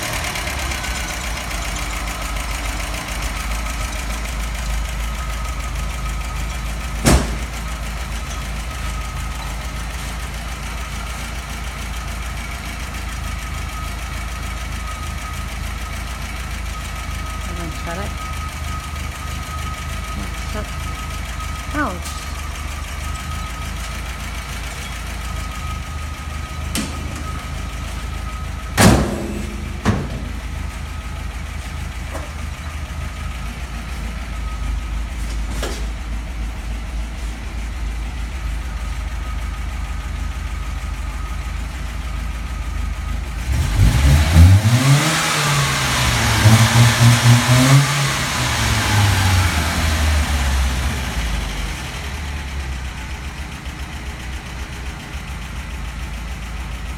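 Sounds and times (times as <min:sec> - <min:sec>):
car engine idling and revving: 0:00.0 - 0:56.9
sharp engine knocks: 0:06.9 - 0:08.4, 0:28.7 - 0:30.6.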